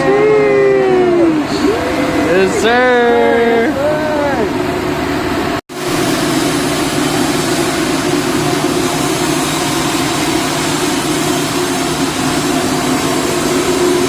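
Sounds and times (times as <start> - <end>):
constant welder hum: 0.0 - 14.0
welding arc hissing: 5.7 - 14.0.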